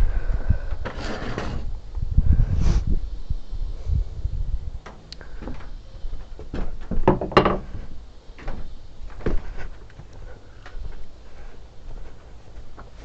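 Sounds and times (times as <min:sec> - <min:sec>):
wooden pieces knocking together: 0:06.9 - 0:07.7.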